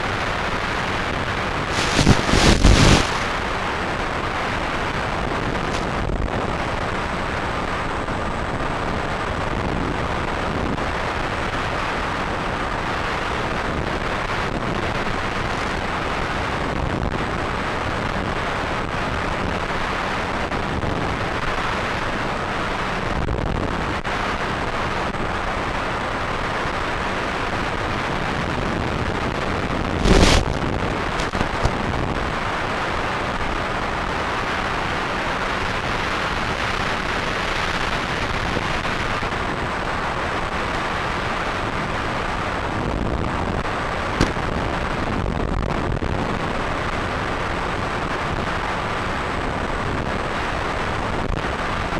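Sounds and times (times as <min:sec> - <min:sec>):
steady rushing noise: 0:00.0 - 0:09.4, 0:27.6 - 0:46.3
loud thump: 0:01.7 - 0:03.3, 0:30.0 - 0:30.6, 0:31.2 - 0:31.8, 0:44.2 - 0:44.6.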